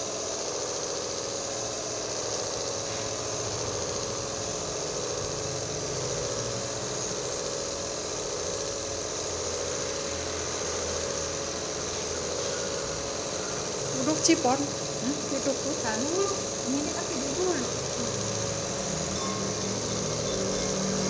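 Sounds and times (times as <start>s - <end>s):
hiss: 0.0s - 4.3s
nebulizer motor humming: 0.0s - 21.0s.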